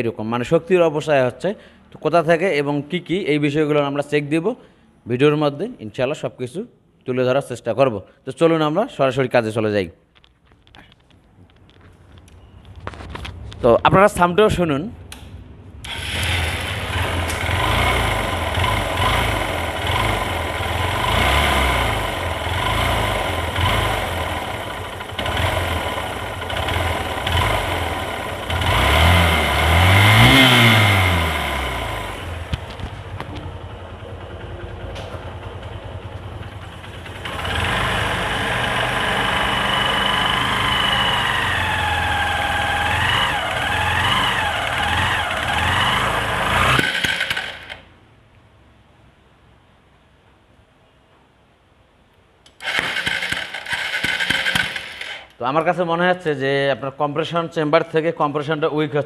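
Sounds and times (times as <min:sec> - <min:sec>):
motorcycle engine revving: 0:15.8 - 0:47.9, 0:52.5 - 0:55.4
motorcycle engine idling: 0:15.9 - 0:47.8.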